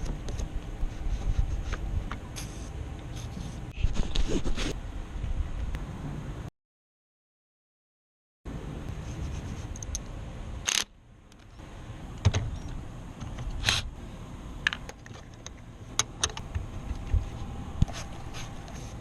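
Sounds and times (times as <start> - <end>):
sharp clicks and knocks: 14.6 - 17.9.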